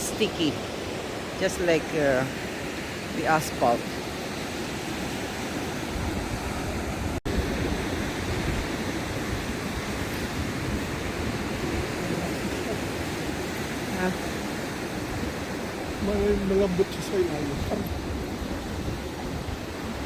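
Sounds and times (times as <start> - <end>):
ocean surf: 0.0 - 20.0
wind rumbling on microphone: 0.0 - 20.0.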